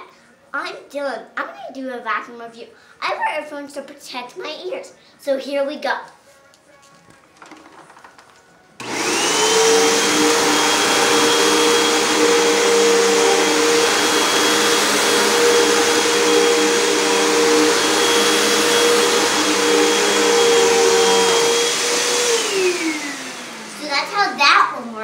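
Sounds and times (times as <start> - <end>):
vacuum cleaner running: 8.0 - 25.0.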